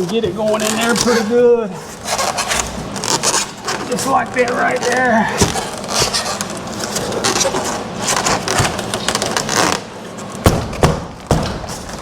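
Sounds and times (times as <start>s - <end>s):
foam panel scraping against metal: 0.0s - 9.8s
sharp knocks: 10.4s - 11.8s.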